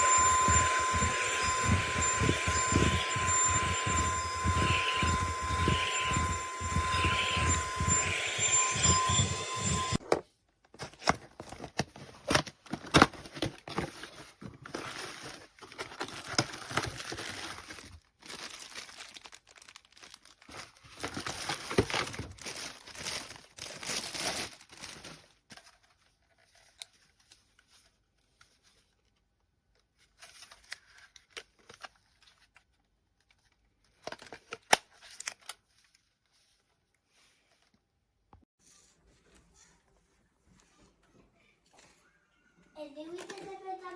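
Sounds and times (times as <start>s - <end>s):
crinkling handling noise: 10.0s - 37.8s.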